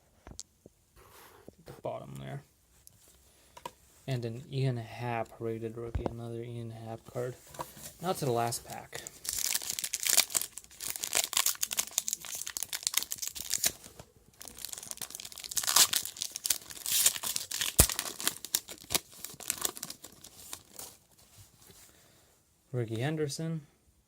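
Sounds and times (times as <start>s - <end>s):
card pack wrapper tearing and crinkling: 8.0s - 21.1s.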